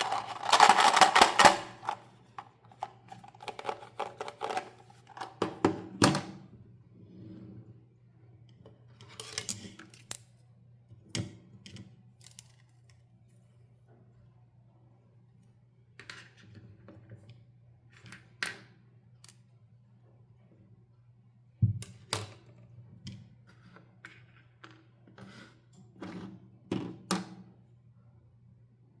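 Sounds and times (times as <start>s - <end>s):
plastic packaging clicks and rustles: 0.0s - 5.4s.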